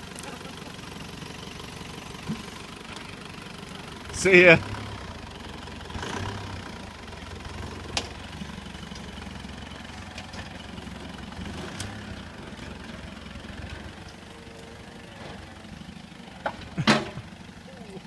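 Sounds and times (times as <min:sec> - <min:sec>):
vehicle engine driving off: 0:00.0 - 0:18.0.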